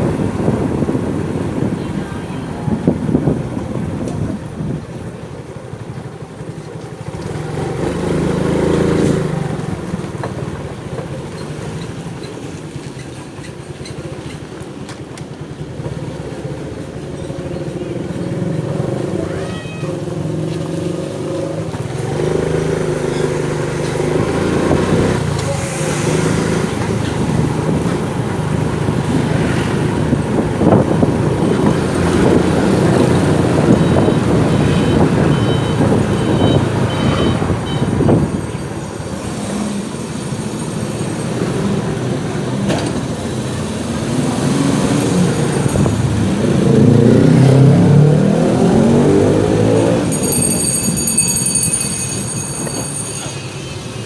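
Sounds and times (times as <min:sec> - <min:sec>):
vehicles passing: 0:00.0 - 0:54.0
short high beeps: 0:33.7 - 0:37.9.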